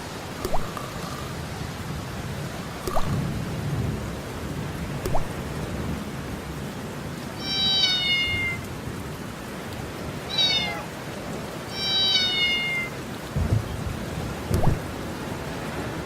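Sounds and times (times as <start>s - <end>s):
rain: 0.0s - 16.0s
cat meowing: 7.4s - 8.6s, 10.3s - 11.0s, 11.7s - 13.0s
low thuds: 14.5s - 15.1s.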